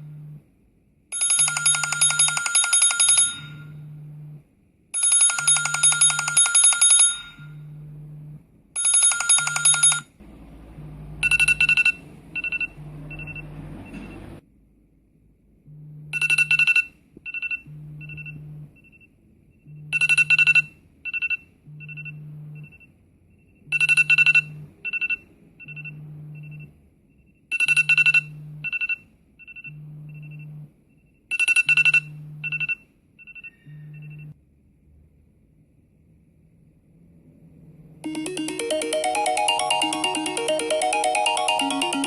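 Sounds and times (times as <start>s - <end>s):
phone ringtone: 1.2s - 3.8s, 5.0s - 7.7s, 8.8s - 10.1s, 11.2s - 13.5s, 38.0s - 42.0s
low steady hum: 10.2s - 14.4s
electronic chime ringtone: 38.0s - 42.0s.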